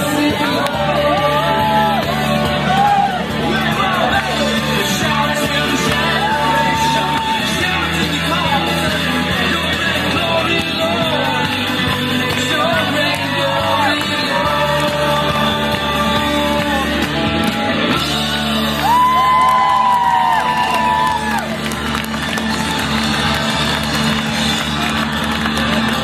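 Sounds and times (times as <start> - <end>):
people singing: 0.0 - 19.0
musical accompaniment: 0.0 - 26.0.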